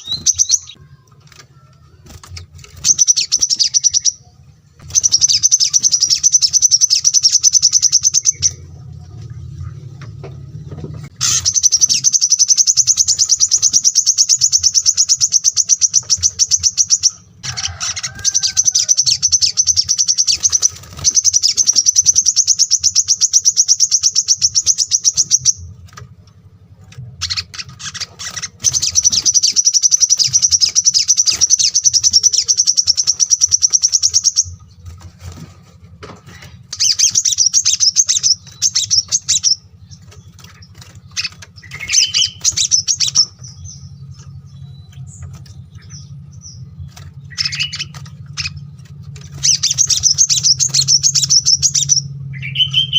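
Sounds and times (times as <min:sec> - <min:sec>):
faint low hum: 0:00.0 - 0:52.9
songbird singing fast trills: 0:04.8 - 0:08.6, 0:11.2 - 0:17.2, 0:18.3 - 0:25.6, 0:27.2 - 0:34.6, 0:36.8 - 0:52.9.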